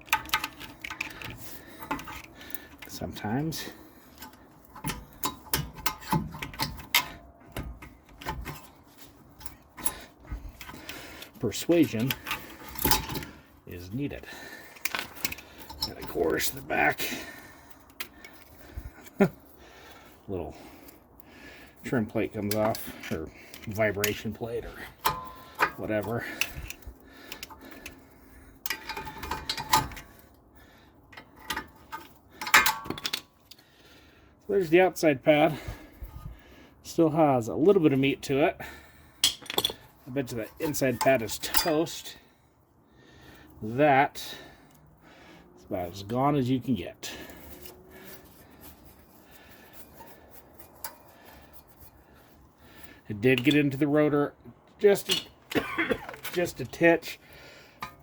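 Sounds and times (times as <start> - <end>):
metal brake parts clinking: 0.0 - 13.5, 14.2 - 18.5, 21.8 - 30.3, 31.1 - 33.5, 39.2 - 42.2, 54.8 - 57.2, 57.8 - 58.0
metallic knocks and clanks: 4.2 - 8.8, 12.0 - 13.4, 24.8 - 26.8, 31.1 - 33.3, 39.2 - 39.9.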